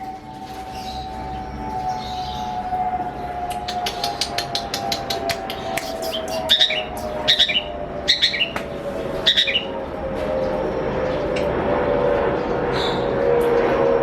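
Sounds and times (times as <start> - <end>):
steady low hum: 0.0 - 14.0
bird sharp ticking notes: 3.5 - 9.7
bird harsh chattering calls: 3.5 - 9.8.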